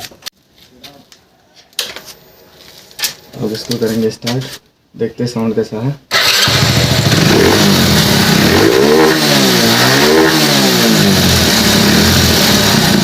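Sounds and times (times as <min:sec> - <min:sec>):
motorcycle engine idling and revving: 0:06.1 - 0:13.0.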